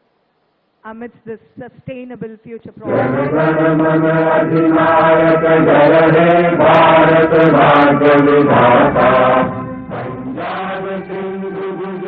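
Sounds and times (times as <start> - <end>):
chanting over public address: 2.7 - 12.0.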